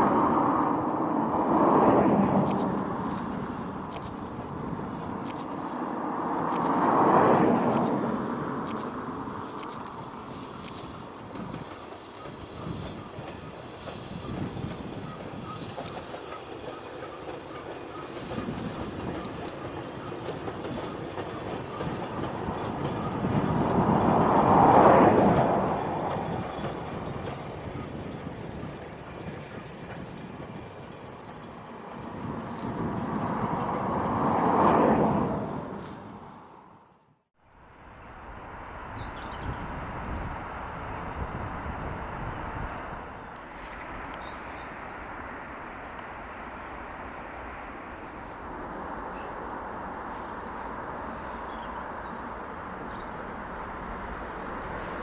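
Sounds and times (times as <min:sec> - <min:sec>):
steam train rumbling past: 0:00.0 - 0:36.9.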